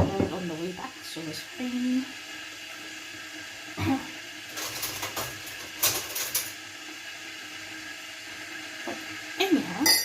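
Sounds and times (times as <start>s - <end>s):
knock on household object: 0.0s - 0.4s
rustling and clattering objects: 4.5s - 6.6s.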